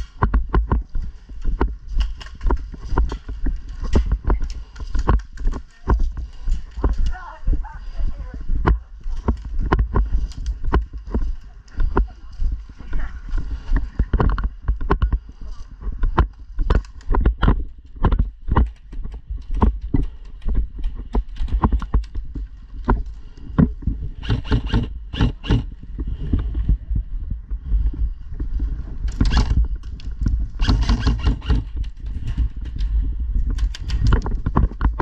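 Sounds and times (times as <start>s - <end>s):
irregular knocks and clicks: 0.0s - 7.0s, 16.0s - 26.7s, 29.1s - 35.0s
steady low rumble: 0.0s - 35.0s.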